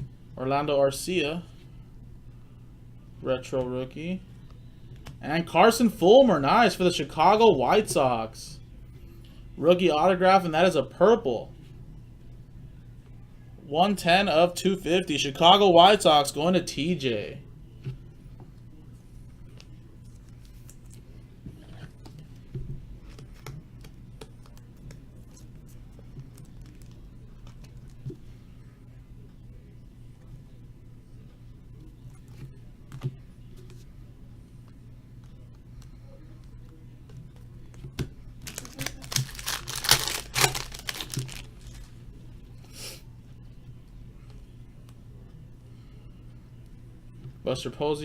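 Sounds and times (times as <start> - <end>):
low electrical hum: 0.0 - 48.0
wrapper tearing and crinkling: 38.4 - 41.9.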